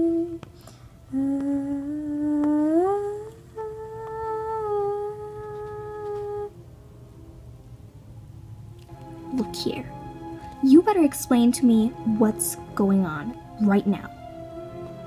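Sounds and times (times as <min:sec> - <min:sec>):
person humming a cheerful tune: 0:00.0 - 0:06.6.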